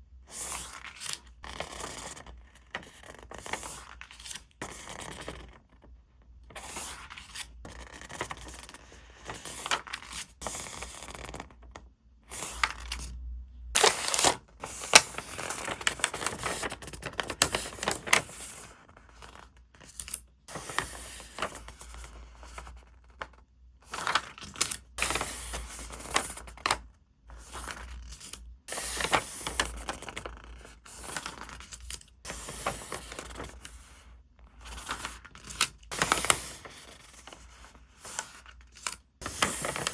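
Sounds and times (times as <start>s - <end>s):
paper crinkling and tearing: 13.8s - 18.4s, 28.9s - 33.7s, 34.6s - 39.9s.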